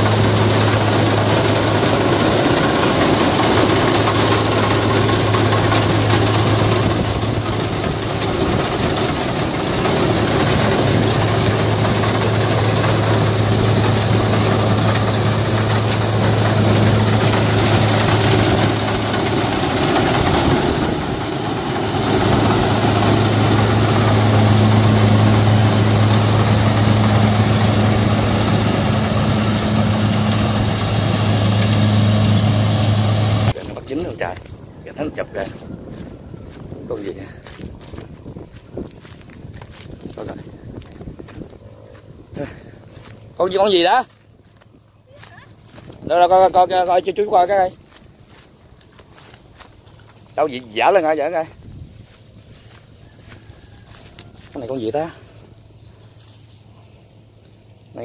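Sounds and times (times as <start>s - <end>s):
threshing machinery rushing: 0.0s - 34.3s
combine harvester diesel engine: 0.0s - 58.0s.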